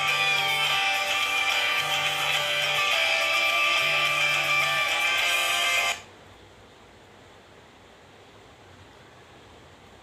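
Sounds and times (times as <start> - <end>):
ringtone melody: 0.0 - 6.0.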